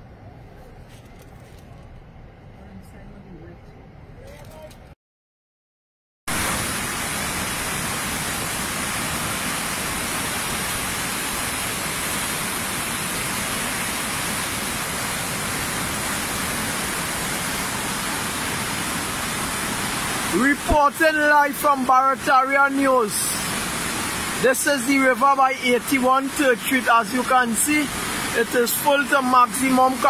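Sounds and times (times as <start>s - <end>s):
rushing river: 6.4s - 30.0s.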